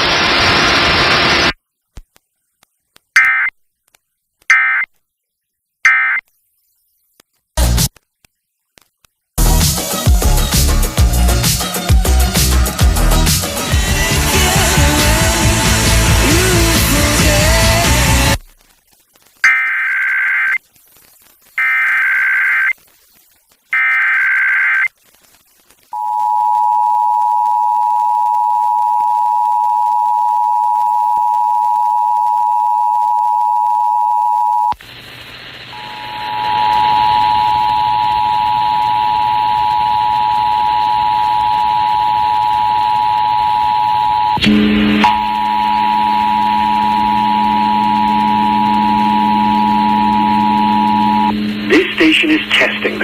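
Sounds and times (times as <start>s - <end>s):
low multi-tone hum: 44.4s - 53.0s.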